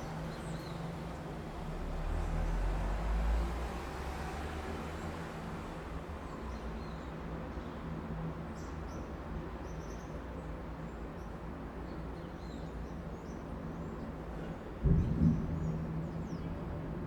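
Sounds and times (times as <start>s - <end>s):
city traffic hum: 0.0s - 8.3s.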